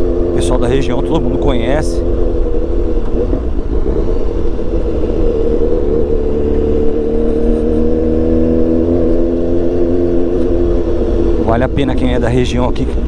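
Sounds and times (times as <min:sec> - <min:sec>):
motorcycle engine running: 0:00.0 - 0:13.0.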